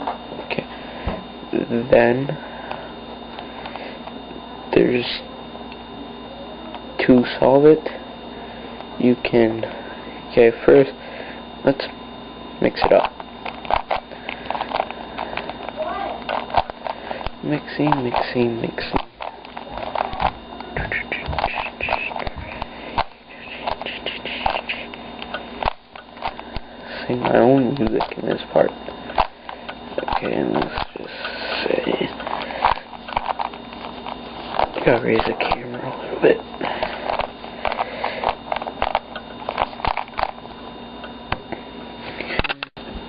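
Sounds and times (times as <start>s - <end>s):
puzzle cube clicking and scraping: 20.9s - 24.9s.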